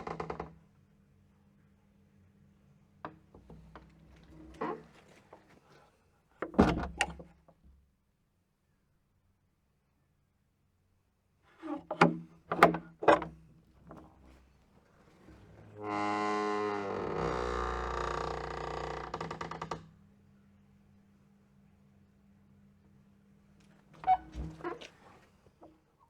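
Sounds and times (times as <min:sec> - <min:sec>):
door hinge creaking: 0:06.4 - 0:07.2, 0:15.8 - 0:19.8, 0:24.0 - 0:24.9
door latch clicks and knocks: 0:06.4 - 0:07.2.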